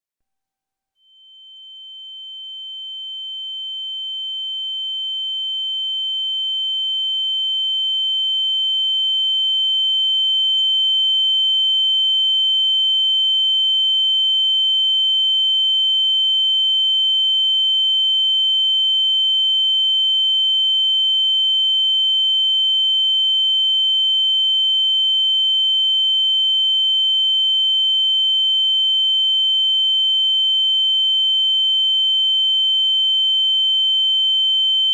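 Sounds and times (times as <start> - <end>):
high-pitched ringing tone: 1.0 - 8.1.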